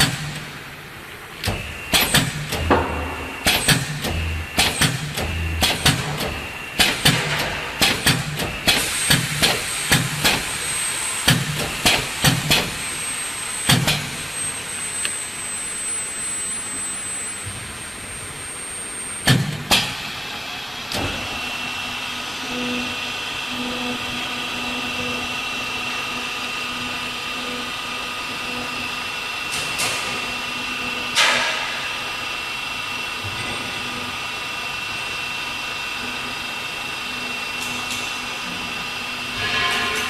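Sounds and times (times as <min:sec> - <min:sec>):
machine high-pitched whine: 0:00.0 - 0:40.0
low hum: 0:02.5 - 0:06.6.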